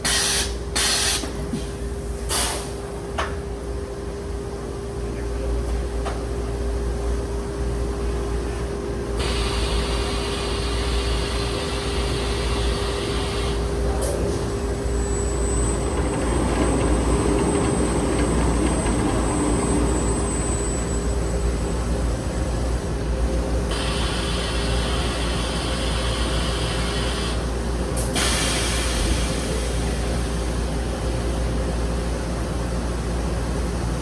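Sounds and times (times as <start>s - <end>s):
hiss: 0.0s - 1.3s, 28.0s - 30.2s.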